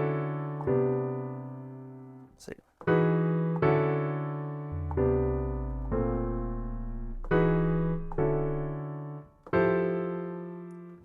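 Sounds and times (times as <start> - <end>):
piano chords ringing: 2.9 - 11.0.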